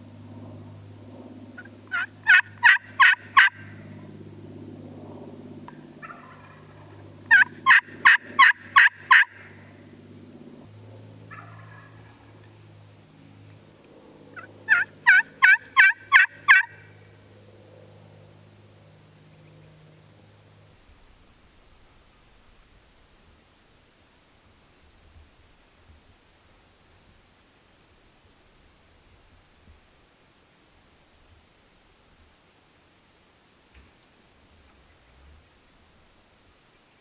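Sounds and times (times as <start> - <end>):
low hum: 0.0 - 23.1
turkey yelping: 1.6 - 3.8, 6.0 - 9.6, 11.3 - 12.3, 14.4 - 17.0
distant turkey call: 1.6 - 3.9, 6.0 - 9.7, 11.3 - 12.4, 14.3 - 17.0.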